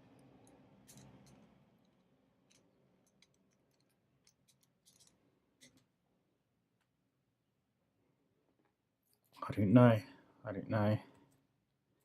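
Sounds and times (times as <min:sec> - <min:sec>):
small metal padlock parts clicking: 0:00.2 - 0:05.8.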